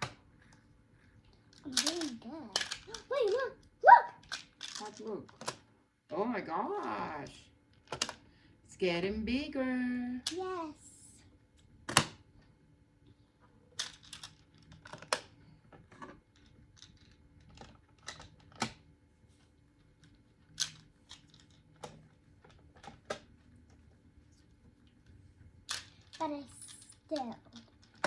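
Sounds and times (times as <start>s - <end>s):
plastic tiles clicking together: 1.6s - 3.4s.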